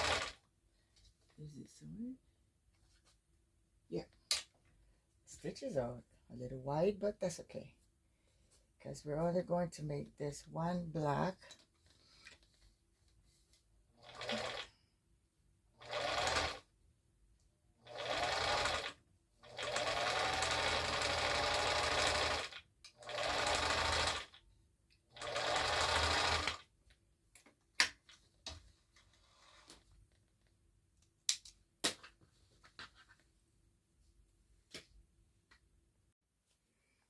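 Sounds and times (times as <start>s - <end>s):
sewing machine stitching: 0.0s - 0.4s, 14.0s - 14.8s, 15.8s - 16.6s, 17.8s - 24.4s, 25.1s - 26.6s.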